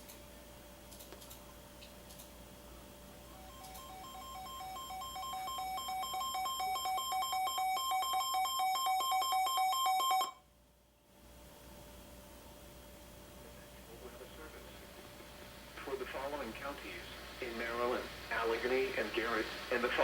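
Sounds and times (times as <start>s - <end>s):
weather alert radio alarm warble: 3.4s - 10.3s.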